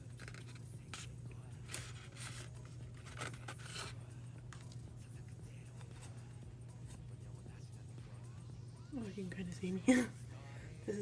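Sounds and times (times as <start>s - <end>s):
packaging rustling and scraping: 0.0s - 4.0s
low steady hum: 0.0s - 11.0s.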